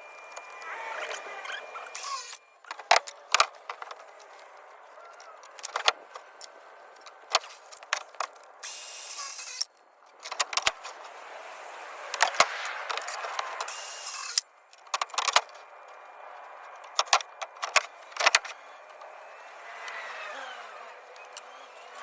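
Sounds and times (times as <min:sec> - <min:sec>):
circular saw cutting wood: 0:00.0 - 0:02.5, 0:08.6 - 0:09.7, 0:13.6 - 0:14.4, 0:19.1 - 0:22.0
knocks and clicks of handling: 0:02.7 - 0:08.6, 0:10.0 - 0:11.0, 0:14.7 - 0:16.0, 0:16.6 - 0:19.1.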